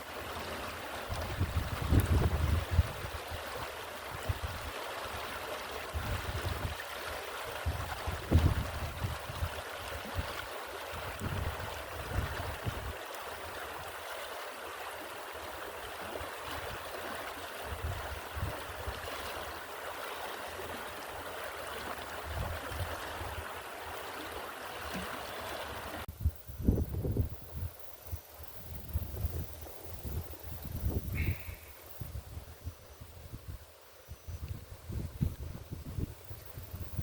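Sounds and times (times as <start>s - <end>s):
stream water running: 0.0s - 37.0s
wind buffeting microphone: 1.1s - 3.2s, 7.6s - 9.6s, 11.0s - 12.9s, 26.1s - 27.8s, 28.6s - 33.6s, 34.3s - 37.0s.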